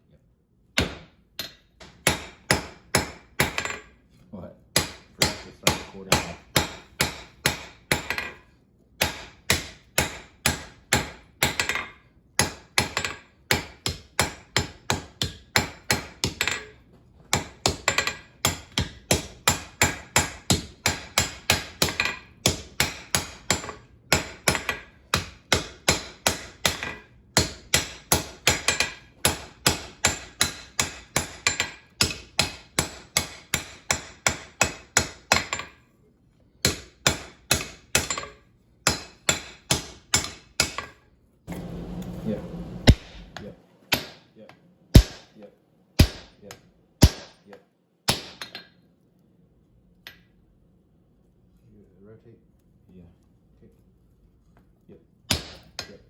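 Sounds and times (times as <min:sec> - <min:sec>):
hammer striking anvil: 0:00.8 - 0:03.9, 0:04.8 - 0:08.4, 0:09.0 - 0:35.8, 0:36.6 - 0:41.0, 0:42.8 - 0:44.3, 0:45.0 - 0:45.4, 0:46.0 - 0:47.5, 0:48.1 - 0:48.8, 0:55.3 - 0:56.0.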